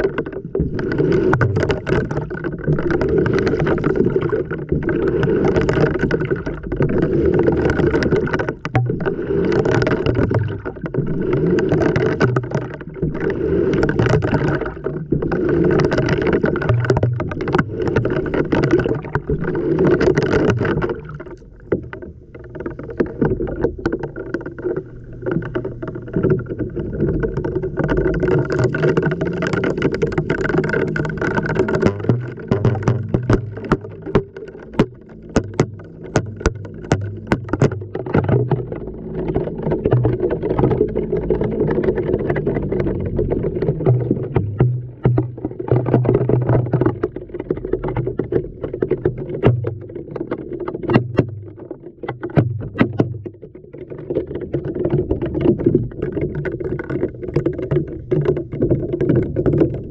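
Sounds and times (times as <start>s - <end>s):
water sloshing: 0.0s - 59.9s
objects knocking in drum: 28.2s - 38.7s.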